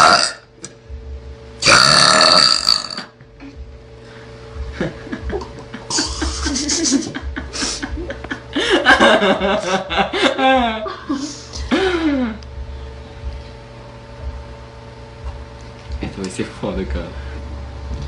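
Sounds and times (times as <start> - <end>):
girl burping: 0.0 - 0.4, 1.6 - 3.2.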